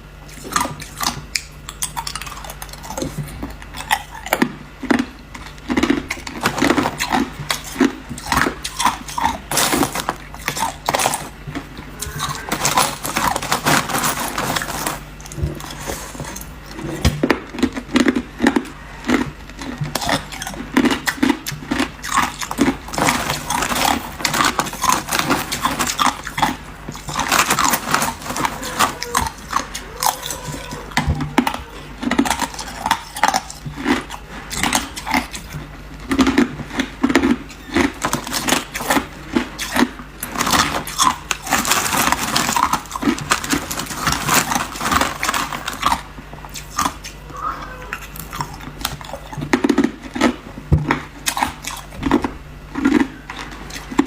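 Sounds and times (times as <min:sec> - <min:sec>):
person crunching ice: 0:17.5 - 0:30.9.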